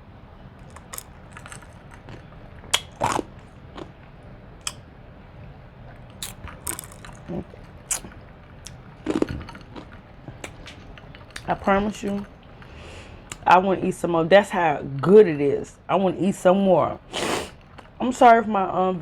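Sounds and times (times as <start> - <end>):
wet chewing and smacking: 0.6 - 4.8, 5.9 - 13.5, 17.0 - 18.3.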